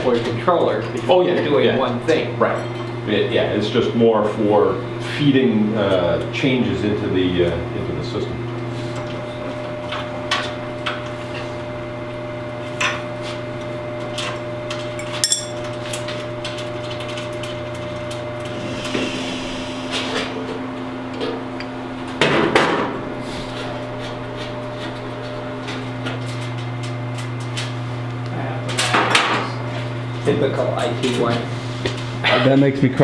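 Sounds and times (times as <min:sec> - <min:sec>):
steady electrical hum: 0:00.0 - 0:33.0
tools clicking and knocking: 0:15.0 - 0:15.7.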